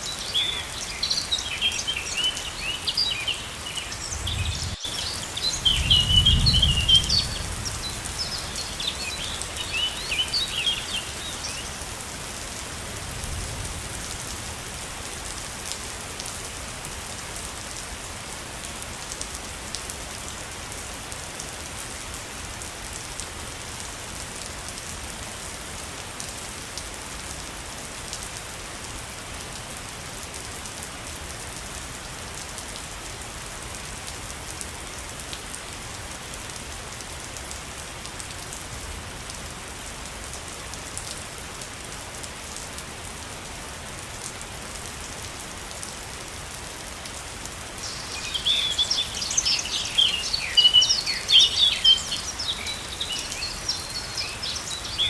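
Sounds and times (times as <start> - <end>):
waterfall rushing: 0.0 - 6.0, 6.7 - 12.0, 47.3 - 55.0.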